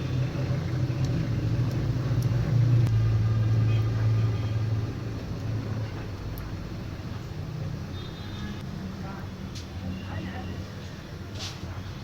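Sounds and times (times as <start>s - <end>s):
vehicle engine drone: 0.0s - 5.9s.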